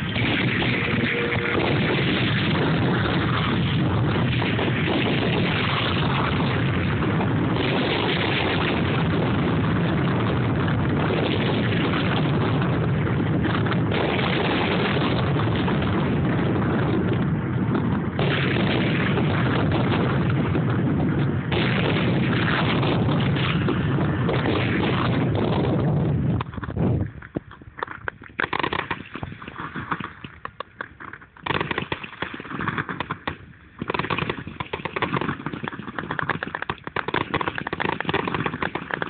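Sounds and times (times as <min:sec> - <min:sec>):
fireworks bursts rumbling: 0:00.0 - 0:39.0.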